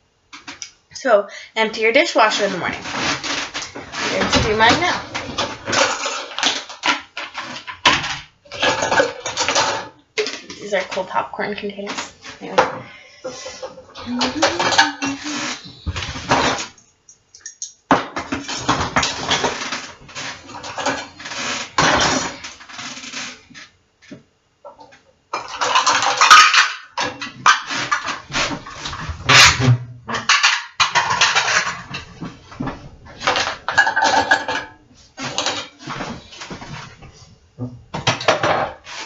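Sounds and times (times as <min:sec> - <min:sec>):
dishes and cutlery clattering: 0:02.4 - 0:11.1, 0:13.4 - 0:16.7, 0:17.4 - 0:22.5, 0:24.7 - 0:36.9.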